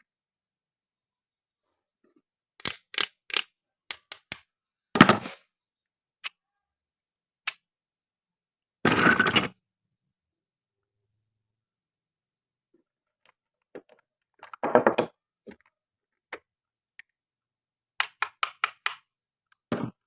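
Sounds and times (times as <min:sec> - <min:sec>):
toy food pieces clicking: 0:02.6 - 0:04.5, 0:18.0 - 0:19.0.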